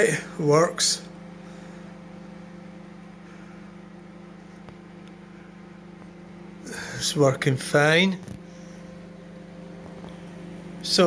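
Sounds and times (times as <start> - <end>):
fan whirr: 0.0 - 11.0
microwave oven humming: 0.0 - 11.0.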